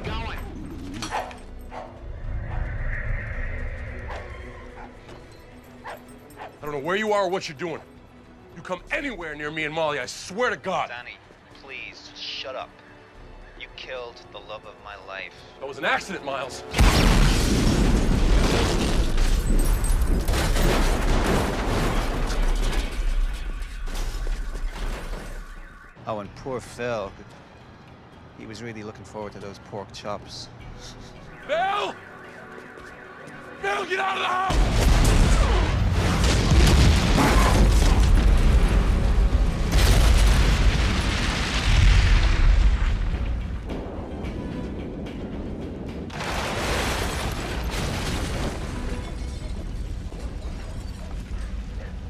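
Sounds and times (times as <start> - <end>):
sharp blast: 16.7 - 19.2
explosion rumbling and rattling: 16.8 - 25.3, 34.5 - 52.0.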